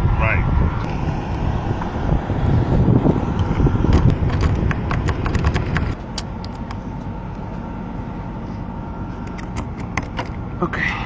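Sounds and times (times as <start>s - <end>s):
low rumble: 0.0s - 11.0s.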